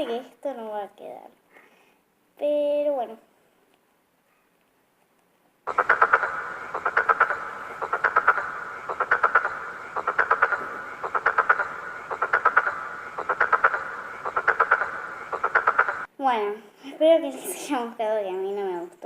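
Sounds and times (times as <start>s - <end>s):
frog croaking: 5.7s - 16.1s.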